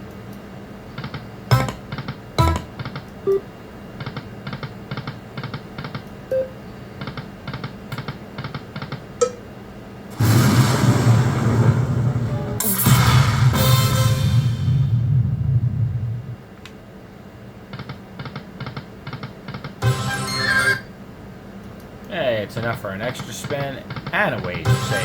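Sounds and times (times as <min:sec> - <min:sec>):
slot machine electronic ticks: 0:01.5 - 0:01.8, 0:02.4 - 0:03.4, 0:23.4 - 0:25.0
loud burst of game sound: 0:10.1 - 0:15.8.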